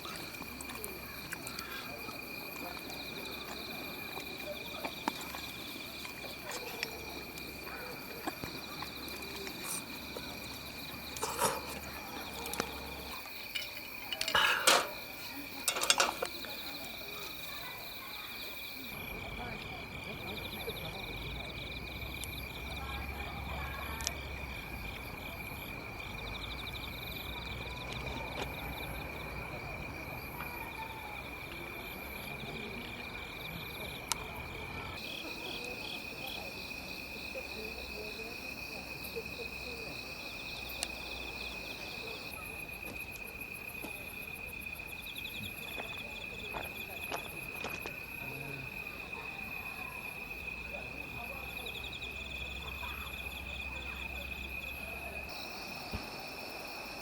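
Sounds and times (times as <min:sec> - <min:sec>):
faint insect clicks: 0:40.4 - 0:41.4.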